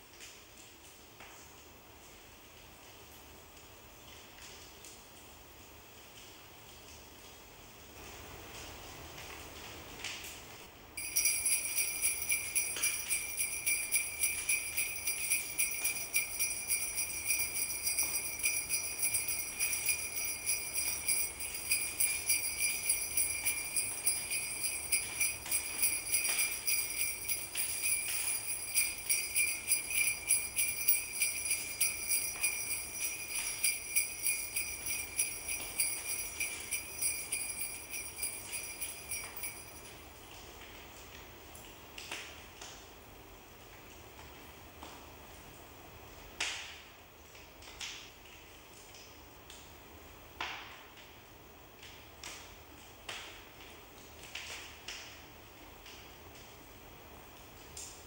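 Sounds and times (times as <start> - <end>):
sleigh bells jingling: 11.0 - 40.0.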